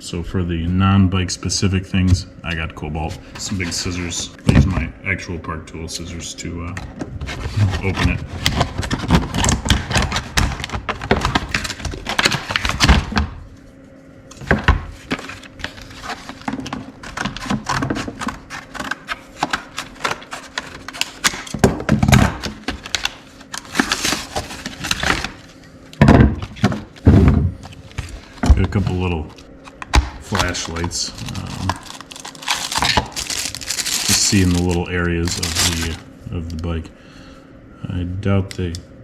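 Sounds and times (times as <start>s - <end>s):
packaging crackling and rustling: 15.0s - 25.5s, 26.4s - 36.0s
scissors cutting packaging: 30.2s - 36.0s.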